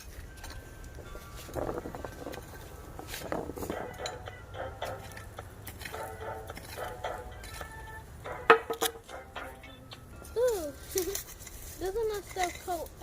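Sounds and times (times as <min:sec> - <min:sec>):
hand tool scraping in soil: 0:00.0 - 0:04.2, 0:04.8 - 0:07.9, 0:10.5 - 0:13.0.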